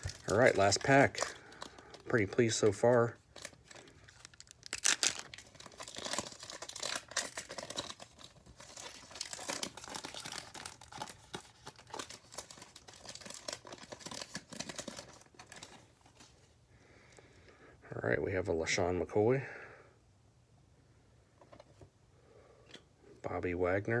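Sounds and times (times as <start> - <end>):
wrapper crinkling: 0.0 - 16.6.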